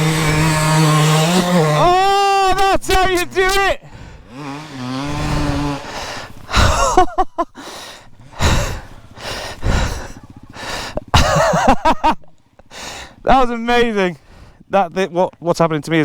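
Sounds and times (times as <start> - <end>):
motorcycle engine: 0.0 - 14.7
heavy panting breaths: 3.8 - 11.5, 12.6 - 13.3, 14.2 - 14.7.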